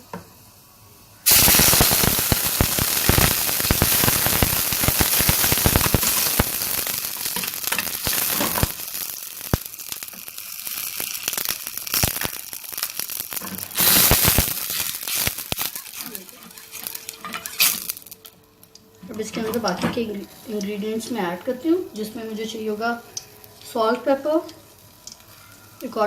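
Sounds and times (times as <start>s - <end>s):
milk sizzling in hot oil: 1.2s - 18.4s, 20.2s - 26.0s.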